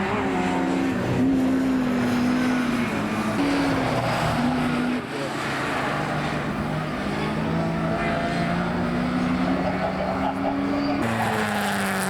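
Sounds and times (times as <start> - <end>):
racing car engine accelerating: 0.0 - 12.0.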